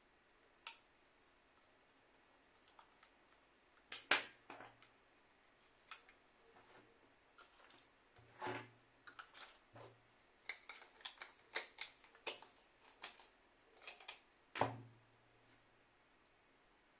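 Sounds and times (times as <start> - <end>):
small clicks and taps of parts: 5.8 - 6.2.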